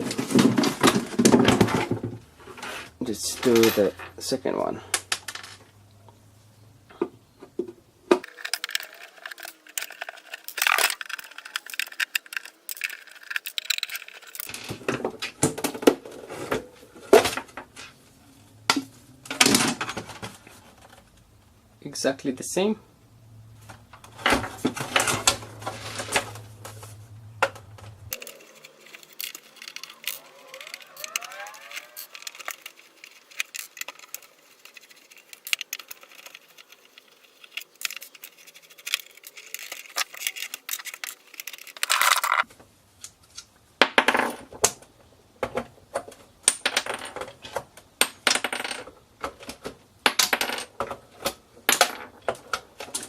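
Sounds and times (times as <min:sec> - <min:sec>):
small pieces clattering on surface: 0:04.8 - 0:05.7, 0:08.2 - 0:18.0, 0:27.8 - 0:42.5
plastic and metal parts clicking: 0:08.1 - 0:15.9, 0:27.4 - 0:42.5.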